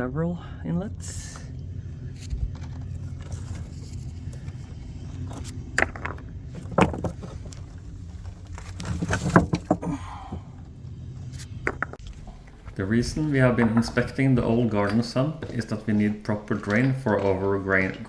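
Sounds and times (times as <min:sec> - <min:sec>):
rocks knocking and scraping: 0:05.2 - 0:10.4, 0:11.6 - 0:18.0
steady low rumble: 0:10.4 - 0:18.0.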